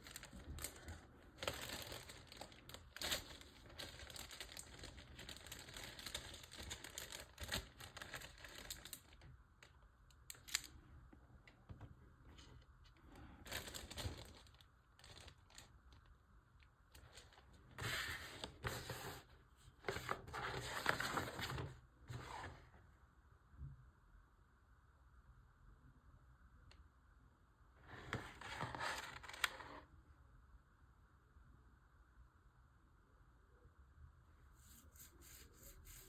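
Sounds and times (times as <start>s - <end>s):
plastic packaging crinkling: 0.0s - 9.2s, 13.4s - 15.8s.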